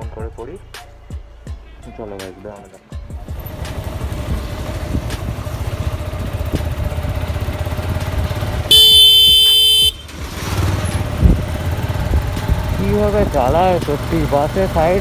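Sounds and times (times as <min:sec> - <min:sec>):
motorcycle engine running: 0:03.1 - 0:15.0
vehicle horn blaring: 0:08.4 - 0:10.5.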